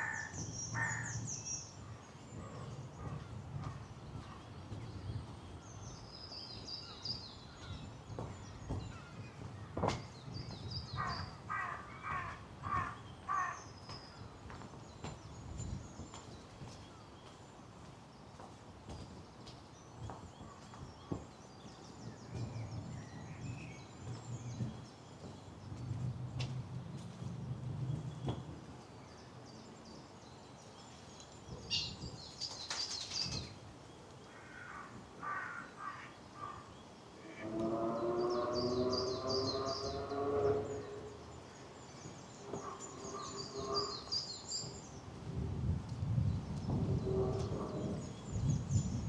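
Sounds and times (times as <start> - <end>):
crow cawing: 0.0 - 1.1, 11.0 - 13.7, 34.3 - 37.7
songbirds twittering: 0.0 - 49.0.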